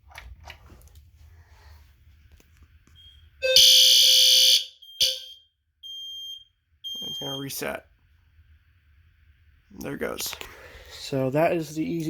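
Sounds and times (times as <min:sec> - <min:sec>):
fire alarm blast: 0:03.0 - 0:07.6.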